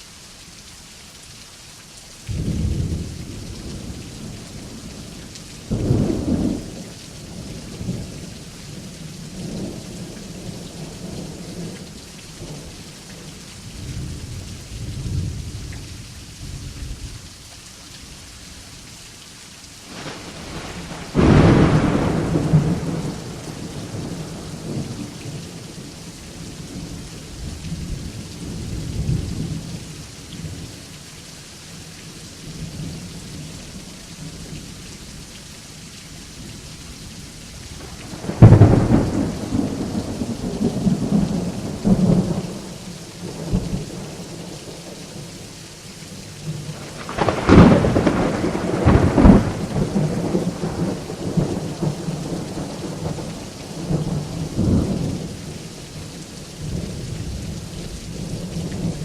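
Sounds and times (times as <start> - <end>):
steady rain: 0.0 - 59.0
thunder cracks and rumbling: 19.9 - 25.6, 37.8 - 44.2, 46.5 - 55.2.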